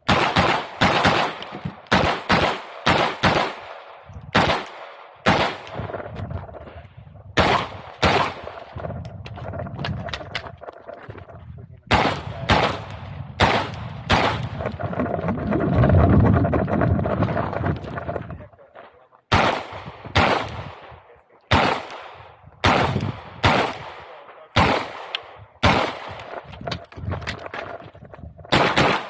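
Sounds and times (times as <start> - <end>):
pistol shots: 0.0 - 6.0, 7.4 - 8.8, 11.9 - 14.8, 19.3 - 26.4, 28.5 - 29.0
low rumble: 11.2 - 18.5.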